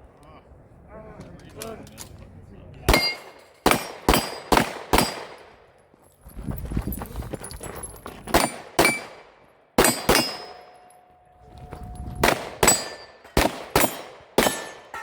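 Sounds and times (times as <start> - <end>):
steel targets ringing: 2.9 - 5.3, 8.4 - 9.1, 9.8 - 11.4, 12.2 - 15.0
pistol shots: 2.9 - 5.6, 8.3 - 10.8, 12.2 - 15.0.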